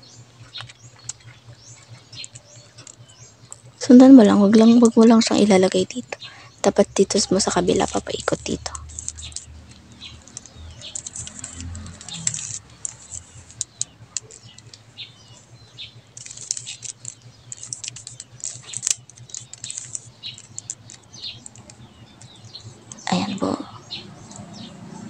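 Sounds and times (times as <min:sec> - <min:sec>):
puzzle cube plastic clicks: 0:02.1 - 0:03.6, 0:07.4 - 0:09.5, 0:10.2 - 0:14.8, 0:16.2 - 0:23.0.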